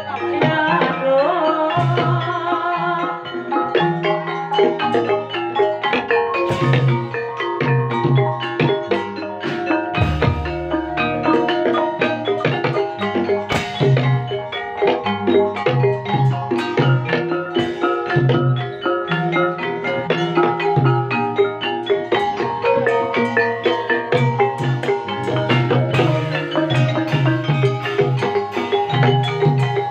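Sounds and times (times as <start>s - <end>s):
gamelan music: 0.0s - 29.9s
steady drum: 6.4s - 21.2s.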